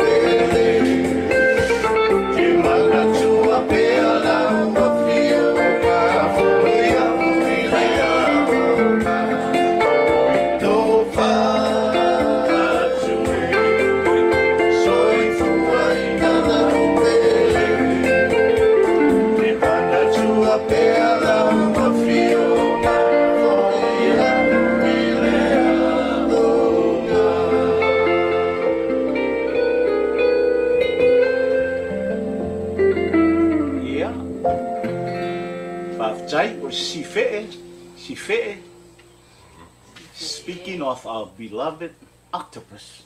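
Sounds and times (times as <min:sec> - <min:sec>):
person singing: 0:00.0 - 0:29.1.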